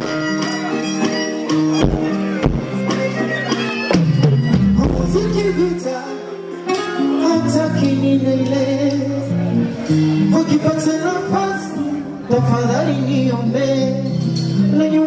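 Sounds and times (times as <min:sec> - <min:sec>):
bass line: 0:00.0 - 0:05.8
guitar: 0:00.0 - 0:15.0
live band music: 0:00.0 - 0:15.0.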